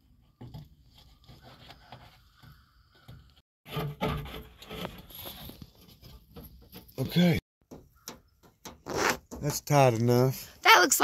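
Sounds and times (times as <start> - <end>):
cord rubbing and scraping: 3.6 - 7.1, 8.7 - 9.4.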